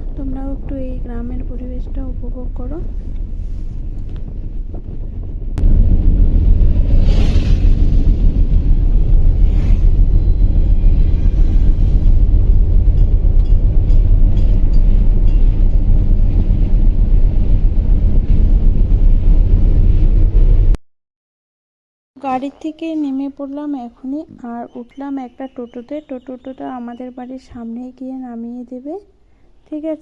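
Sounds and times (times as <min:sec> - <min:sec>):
wind buffeting microphone: 0:00.0 - 0:20.7.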